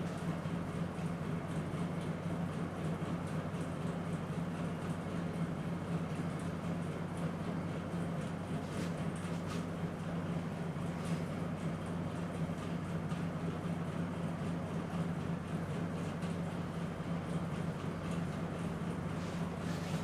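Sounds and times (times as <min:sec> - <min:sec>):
hands rubbing hair: 0:19.2 - 0:20.0.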